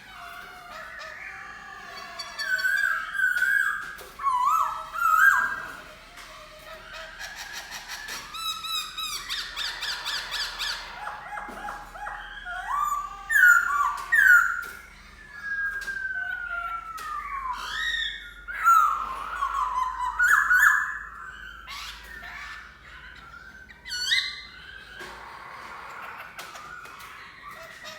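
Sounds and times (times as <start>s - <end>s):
bird singing whistled phrases: 12.0s - 22.0s.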